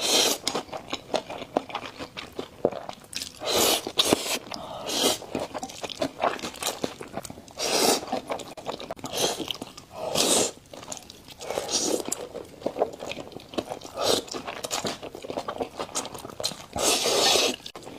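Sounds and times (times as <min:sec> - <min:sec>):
chewing with wet clicks: 0:00.4 - 0:09.9, 0:10.5 - 0:17.9
noodle slurp: 0:16.8 - 0:17.7.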